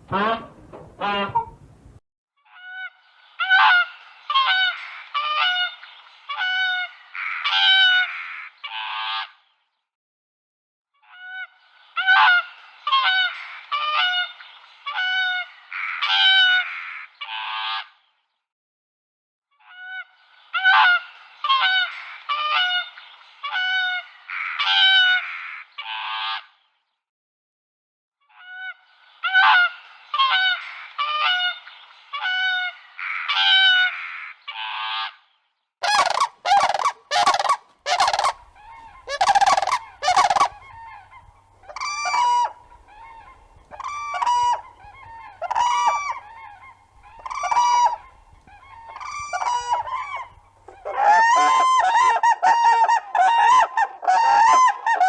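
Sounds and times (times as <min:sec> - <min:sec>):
large bird honking: 0:00.0 - 0:01.8, 0:35.8 - 0:55.0
harsh bird calls: 0:35.8 - 0:55.0.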